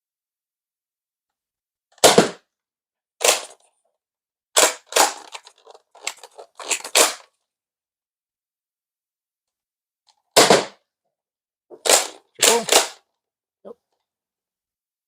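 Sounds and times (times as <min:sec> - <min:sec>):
plastic clacks and snaps: 0:04.6 - 0:07.3.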